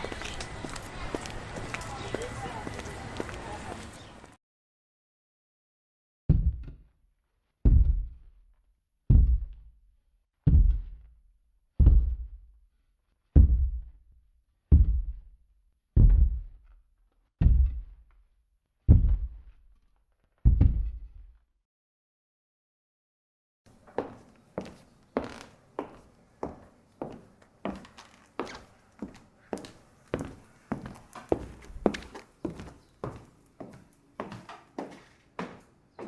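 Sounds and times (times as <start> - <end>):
heavy footsteps thudding: 7.7 - 8.3, 9.1 - 9.6, 10.5 - 11.1, 11.8 - 12.4, 13.4 - 14.0, 14.7 - 15.2, 16.0 - 16.6, 17.4 - 18.0, 18.9 - 19.5, 20.5 - 21.4.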